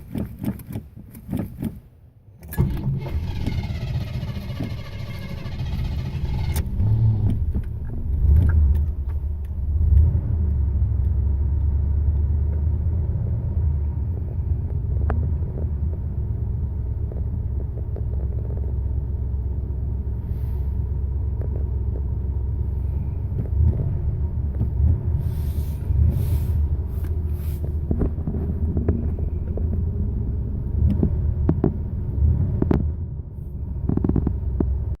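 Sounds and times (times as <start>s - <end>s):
sharp clicks and knocks: 0.0s - 2.6s, 27.0s - 30.0s, 30.7s - 33.0s, 33.8s - 35.0s
car engine idling: 2.6s - 12.2s, 14.5s - 35.0s.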